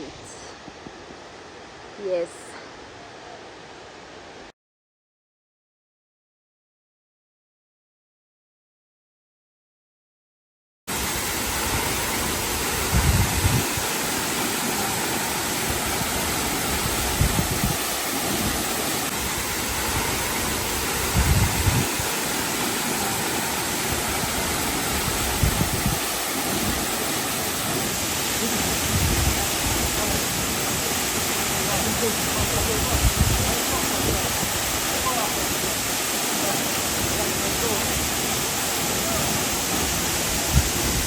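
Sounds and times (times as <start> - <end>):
waterfall roar: 10.9 - 41.0.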